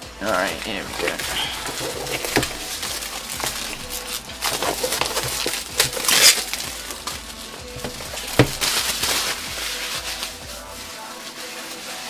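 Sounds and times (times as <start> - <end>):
packaging rustling: 0.2 - 12.0
knife scraping a box: 1.2 - 6.6.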